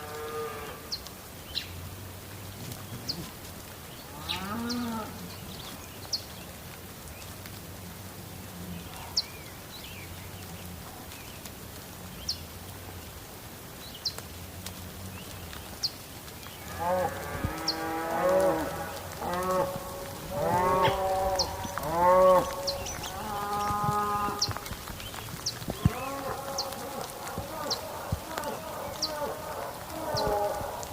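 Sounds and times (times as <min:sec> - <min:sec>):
faint steady hiss: 0:00.0 - 0:30.9
animal calls rising and falling: 0:16.7 - 0:24.8, 0:25.6 - 0:30.9.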